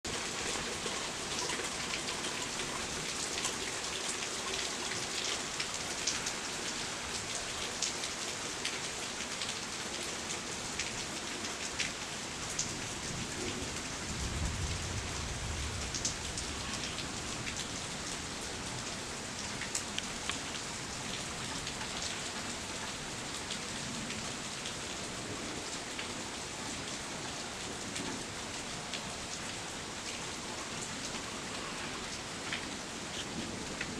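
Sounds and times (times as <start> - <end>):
heavy rain: 0.0 - 33.9
raindrops ticking near microphone: 0.1 - 33.9
low thunder rumble: 14.1 - 16.8.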